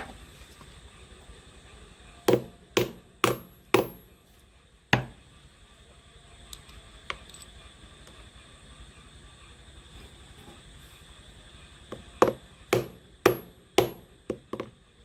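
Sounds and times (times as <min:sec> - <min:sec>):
hammer striking metal: 0:02.3 - 0:04.2, 0:05.0 - 0:05.2, 0:12.0 - 0:14.7.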